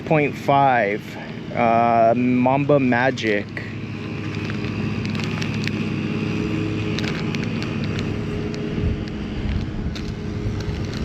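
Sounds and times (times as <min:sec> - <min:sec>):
vehicle engine idling: 0:00.0 - 0:11.0
packaging clicks: 0:04.2 - 0:05.9, 0:06.8 - 0:11.0.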